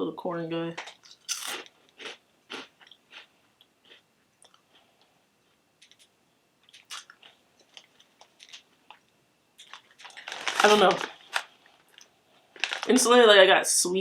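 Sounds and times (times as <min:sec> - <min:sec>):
crunchy snack being chewed: 0:01.0 - 0:05.0, 0:05.8 - 0:09.0.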